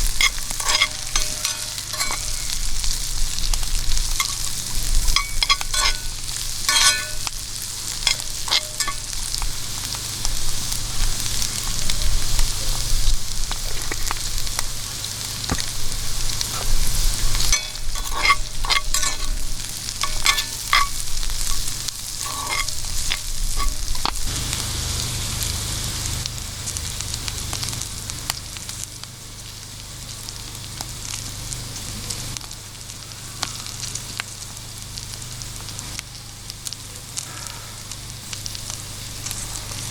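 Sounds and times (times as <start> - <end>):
short clinks: 0.0 - 2.8, 4.1 - 9.4, 16.6 - 24.2
food sizzling in hot oil: 0.0 - 39.9.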